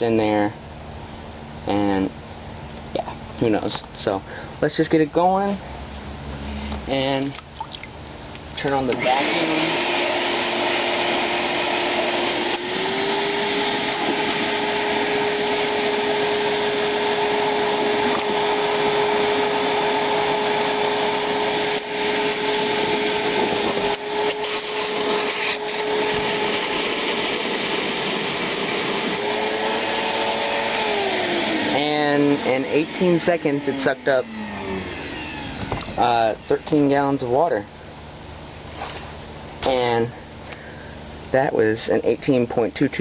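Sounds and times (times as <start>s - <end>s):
wet dry vacuum whining: 8.5s - 39.2s
hose sucking up water: 9.2s - 33.6s.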